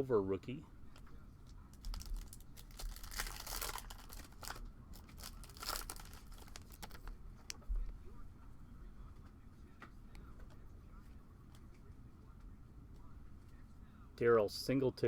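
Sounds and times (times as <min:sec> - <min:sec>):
wrappers crinkling and rustling: 0:01.7 - 0:07.2.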